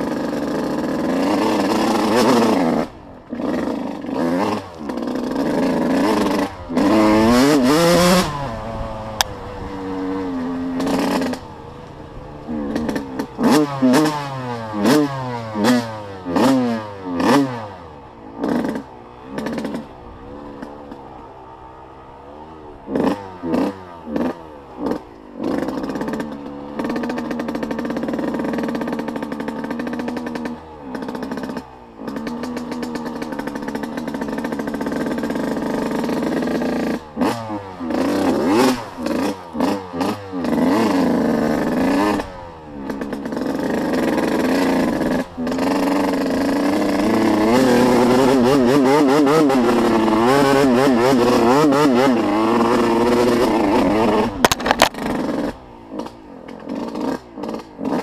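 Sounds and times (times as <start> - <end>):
off-road vehicle engine revving: 0.0 - 58.0.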